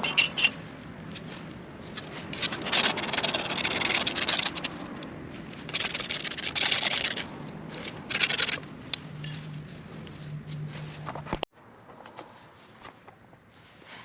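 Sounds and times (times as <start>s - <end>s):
scraping and rubbing on metal: 1.9s - 10.0s.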